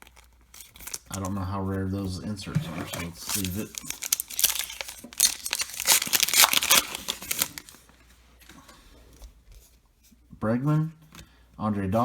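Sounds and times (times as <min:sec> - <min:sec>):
wrapper tearing and crinkling: 0:00.0 - 0:01.4, 0:03.0 - 0:07.9.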